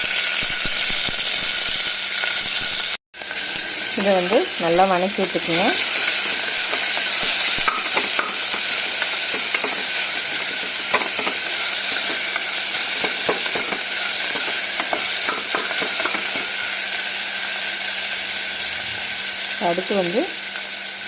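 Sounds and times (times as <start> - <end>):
onions sizzling in oil: 0.0 - 21.0
utensil scraping and stirring pan: 5.3 - 16.6.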